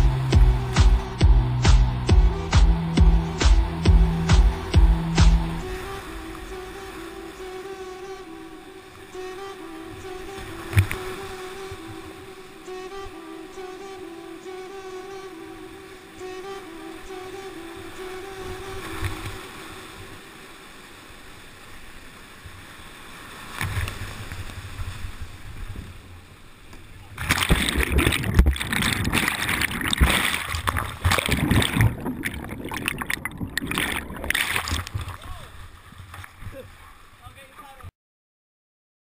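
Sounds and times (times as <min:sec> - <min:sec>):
low buffeting thumps: 0:00.0 - 0:05.7
river water rushing and splashing: 0:00.0 - 0:37.8.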